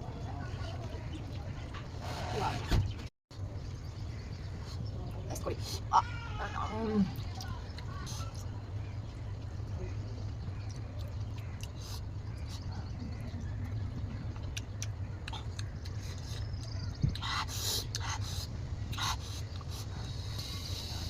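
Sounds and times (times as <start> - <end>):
steady low hum: 0.0 - 21.0
chewing clicks and smacks: 10.4 - 18.3.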